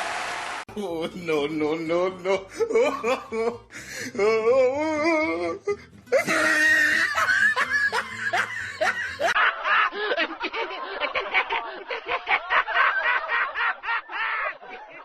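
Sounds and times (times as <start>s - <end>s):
person laughing in bursts: 2.3s - 3.8s, 6.1s - 15.0s
quick rhythmic laughter: 6.1s - 15.0s.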